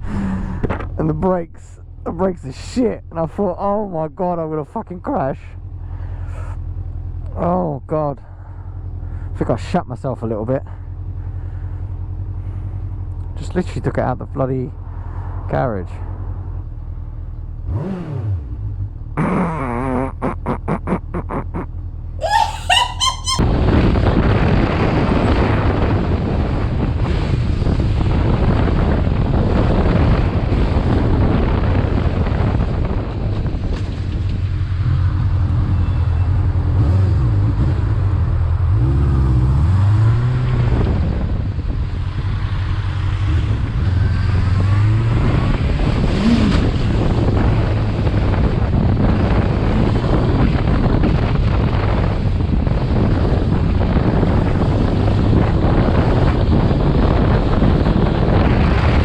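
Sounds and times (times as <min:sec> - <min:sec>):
wind buffeting microphone: 0:43.4 - 0:59.0.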